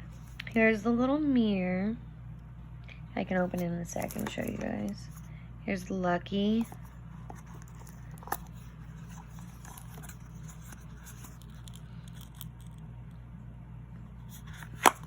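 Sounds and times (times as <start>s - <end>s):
steady low hum: 0.0s - 15.0s
packaging taps and scrapes: 3.5s - 5.2s, 6.6s - 12.5s, 14.3s - 15.0s.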